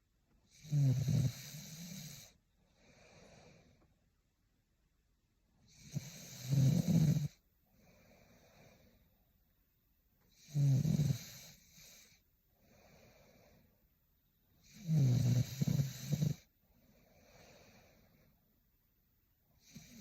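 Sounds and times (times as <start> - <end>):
woman snoring: 0.5 - 2.4, 5.7 - 7.4, 10.3 - 12.2, 14.6 - 16.5, 19.6 - 20.0
soft breaths: 1.2 - 4.2, 5.9 - 9.6, 10.2 - 18.8.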